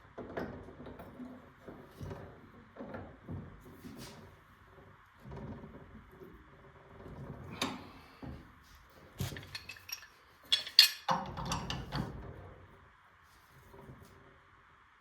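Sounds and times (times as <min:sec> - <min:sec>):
metal tools clinking and clattering: 0:09.2 - 0:12.1.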